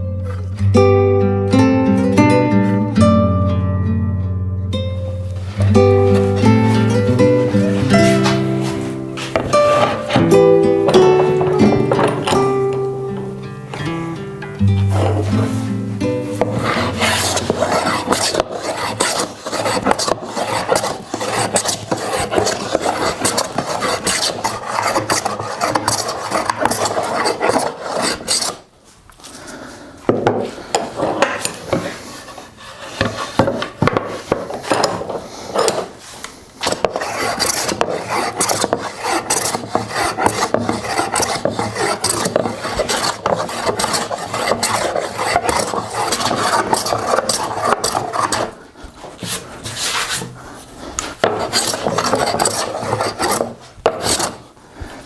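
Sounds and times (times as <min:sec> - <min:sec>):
hand tool rasping wood: 0:05.6 - 0:10.3, 0:14.8 - 0:28.6, 0:30.2 - 0:54.5.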